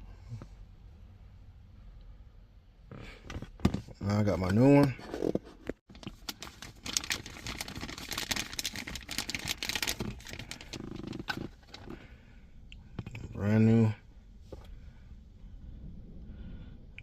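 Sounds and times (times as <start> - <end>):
plastic crinkling: 5.9 - 12.0.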